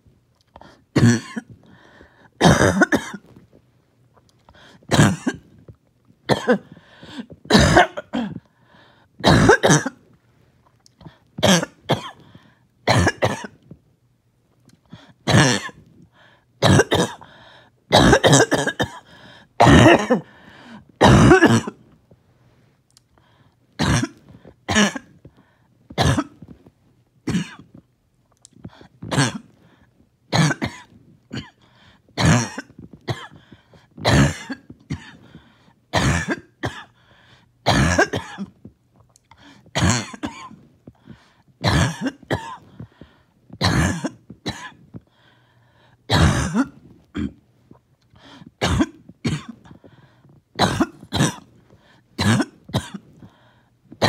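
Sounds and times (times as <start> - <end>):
throat clearing: 0.6 - 1.8, 4.9 - 5.6, 6.3 - 8.5, 15.0 - 15.8, 17.9 - 20.4, 28.5 - 29.8, 30.4 - 37.0, 39.3 - 42.9
person coughing harshly: 0.9 - 1.8, 2.4 - 3.4, 4.9 - 5.5, 6.3 - 8.4, 9.2 - 10.0, 11.4 - 12.3, 12.9 - 13.6, 15.3 - 15.8, 16.6 - 17.3, 17.9 - 21.9, 23.8 - 25.2, 26.0 - 26.5, 27.3 - 27.8, 29.0 - 29.7, 30.3 - 37.0, 37.6 - 38.6, 39.4 - 40.7, 41.6 - 42.8, 43.6 - 44.9, 46.1 - 47.4, 48.6 - 49.8, 50.6 - 51.6, 52.2 - 53.4.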